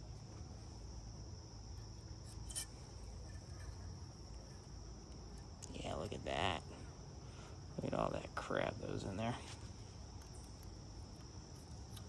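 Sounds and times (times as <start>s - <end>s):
insect trill: 0.0s - 12.0s
metal tweezers clicking and scraping: 2.2s - 4.6s, 11.6s - 12.0s.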